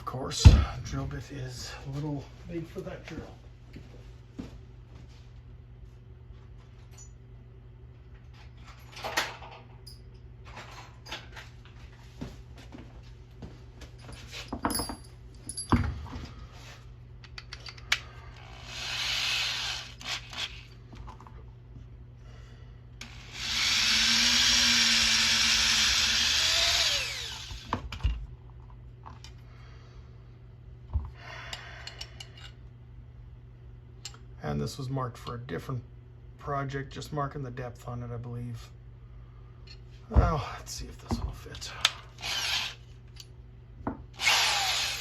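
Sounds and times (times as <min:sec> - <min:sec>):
electric drill running: 0:18.4 - 0:20.7, 0:23.0 - 0:27.7, 0:42.2 - 0:42.8, 0:44.2 - 0:45.0.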